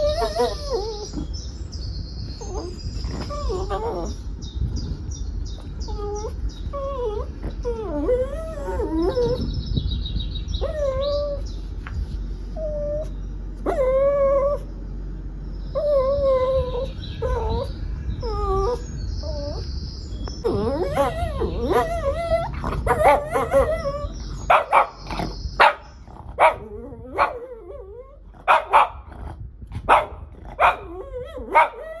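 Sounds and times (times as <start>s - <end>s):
dog whining and yipping: 0.0s - 11.7s, 12.5s - 14.7s, 15.7s - 29.1s, 29.8s - 32.0s.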